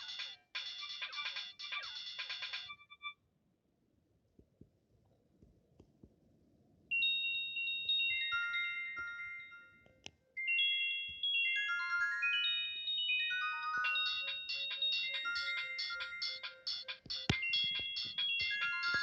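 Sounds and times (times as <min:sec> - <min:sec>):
phone ringtone melody: 0:00.0 - 0:03.1, 0:06.9 - 0:19.0.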